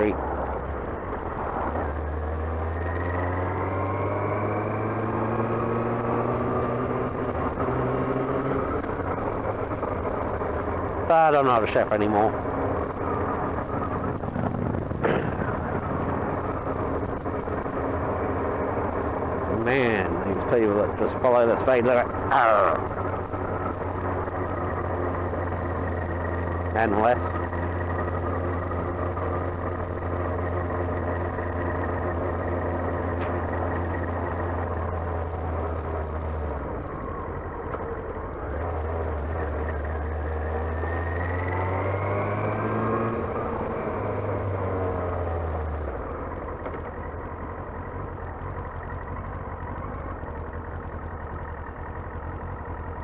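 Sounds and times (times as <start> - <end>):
motorcycle engine running: 0.0 - 53.0
wind noise: 13.4 - 17.3.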